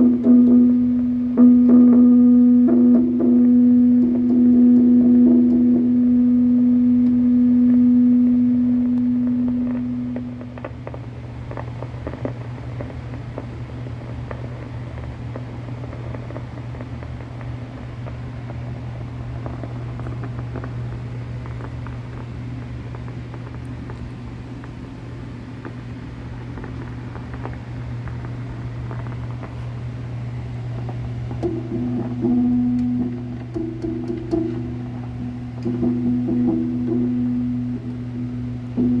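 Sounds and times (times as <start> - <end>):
guitar amplifier humming: 0.0 - 39.0
tubes clicking and crackling: 8.3 - 39.0.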